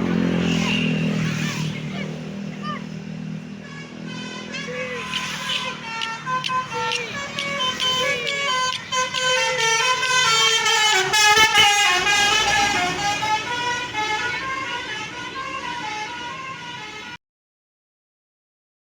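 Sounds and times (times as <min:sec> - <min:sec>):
multi-tone air horn melody: 0:03.6 - 0:17.2.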